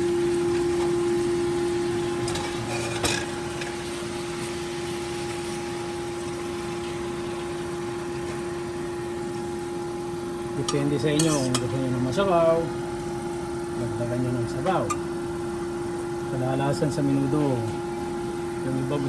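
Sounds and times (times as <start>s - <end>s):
constant hum: 0.0s - 19.0s
pot hissing: 10.0s - 13.3s.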